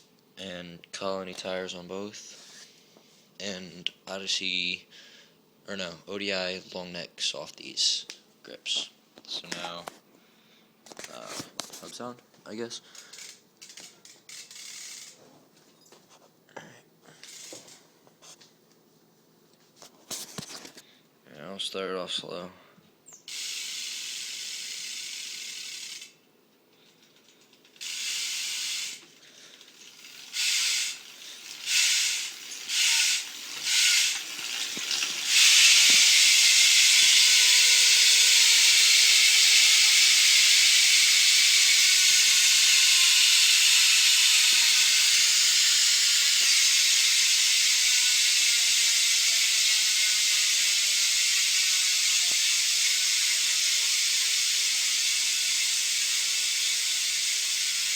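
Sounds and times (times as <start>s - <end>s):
bicycle hub clicking freewheeling: 12.9s - 15.2s, 17.2s - 17.8s, 23.2s - 57.9s.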